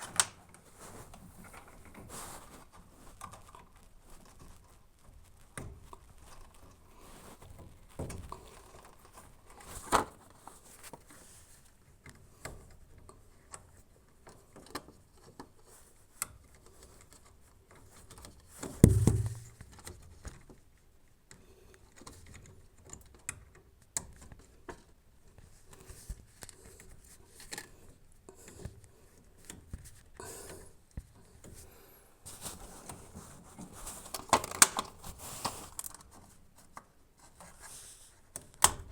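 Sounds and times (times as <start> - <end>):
heavy thump: 18.8 - 19.6.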